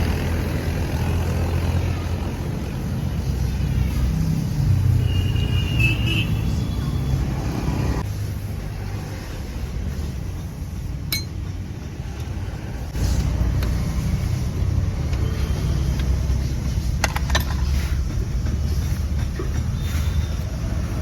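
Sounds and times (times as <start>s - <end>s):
metal tools clinking: 11.1s - 11.5s.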